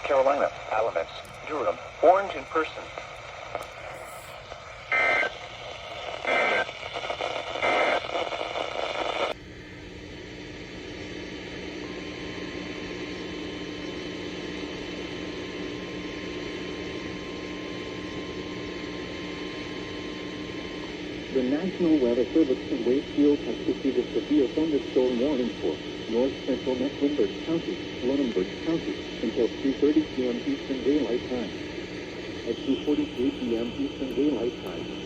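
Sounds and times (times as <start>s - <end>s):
radio static: 0.0s - 9.4s, 19.0s - 35.0s
low hum: 0.1s - 35.0s
faint steady tone: 10.8s - 35.0s.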